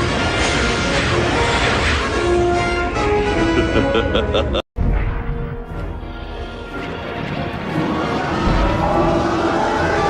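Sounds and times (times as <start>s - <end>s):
orchestral strings: 5.2s - 10.0s.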